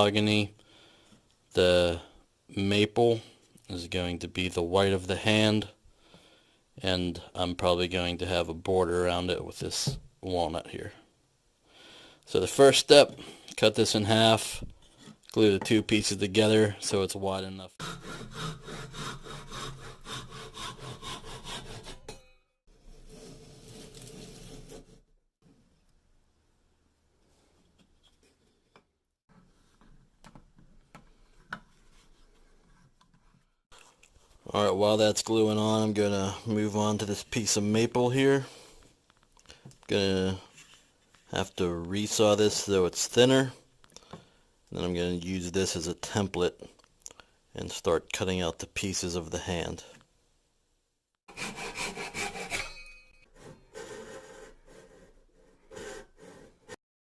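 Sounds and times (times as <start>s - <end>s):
hand saw cutting wood: 17.8s - 22.2s, 22.8s - 25.0s, 51.3s - 56.8s.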